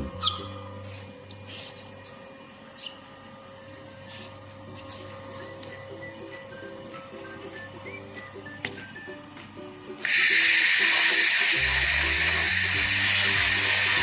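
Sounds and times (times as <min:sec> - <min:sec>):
laser cleaning machine humming: 0:00.0 - 0:14.0
laser hissing bursts: 0:10.0 - 0:14.0.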